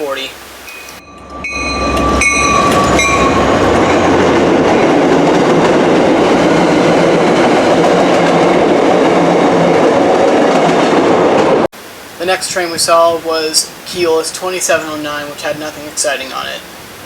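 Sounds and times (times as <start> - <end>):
high tone: 0.6 - 4.1
train passing at speed: 1.0 - 11.7
wheels clacking over rail joints: 1.1 - 11.6.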